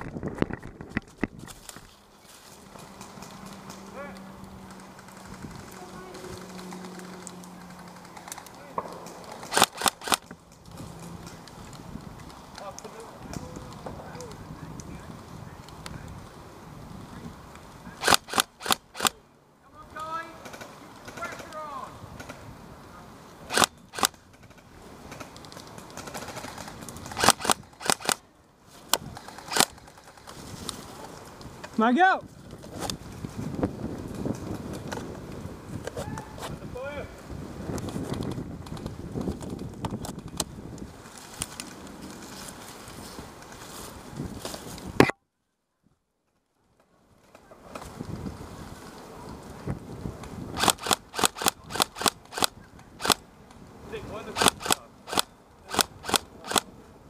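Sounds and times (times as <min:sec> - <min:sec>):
wind noise on microphone: 0:00.0 - 0:01.9, 0:05.2 - 0:06.6, 0:13.1 - 0:19.1, 0:28.8 - 0:45.1, 0:47.8 - 0:56.8
airsoft rifle shots: 0:08.7 - 0:10.3, 0:18.0 - 0:19.2, 0:23.5 - 0:24.2, 0:27.1 - 0:28.2, 0:50.6 - 0:53.2, 0:54.3 - 0:56.7.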